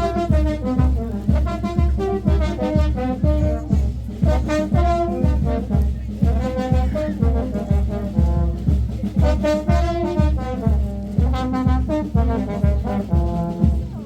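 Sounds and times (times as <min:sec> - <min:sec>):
upbeat brass music: 0:00.0 - 0:14.0.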